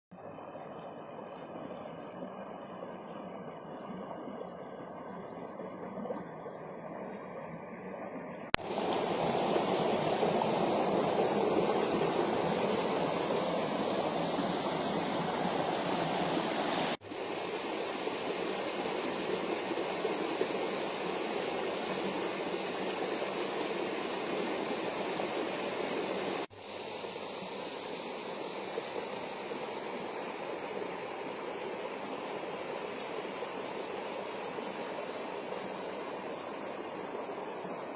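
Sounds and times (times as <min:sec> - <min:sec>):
waterfall rushing water: 0:08.5 - 0:37.9.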